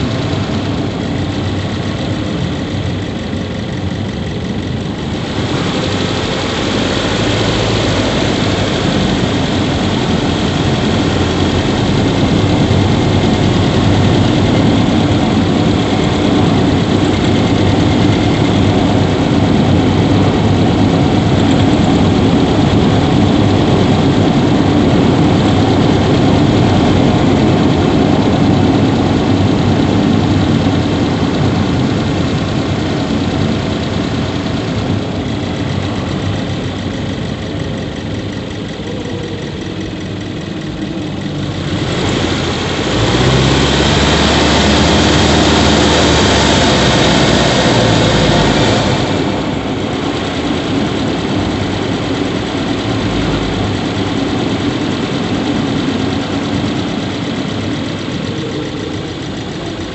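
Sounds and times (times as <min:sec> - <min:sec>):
car engine running: 0:00.0 - 0:59.9
rushing noise: 0:00.0 - 0:59.9.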